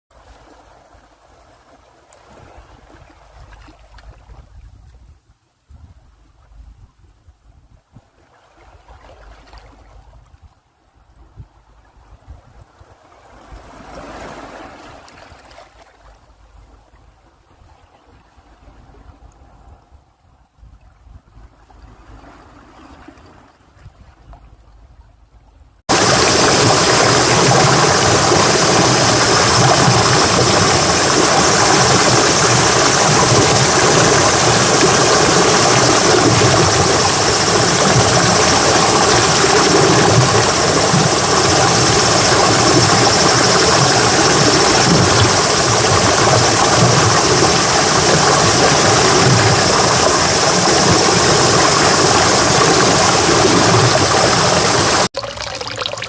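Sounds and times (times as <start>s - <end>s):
loud rushing water: 25.9s - 56.0s.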